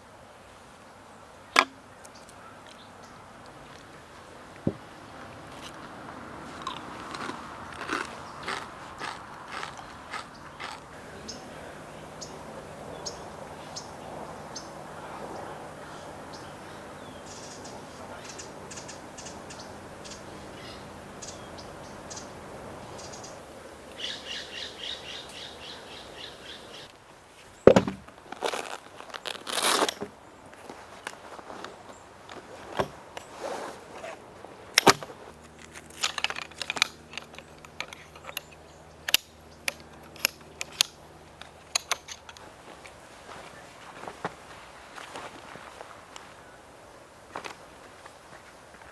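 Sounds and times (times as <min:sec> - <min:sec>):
rustling: 0:27.2 - 0:42.5
objects clicking and tapping: 0:34.8 - 0:42.4.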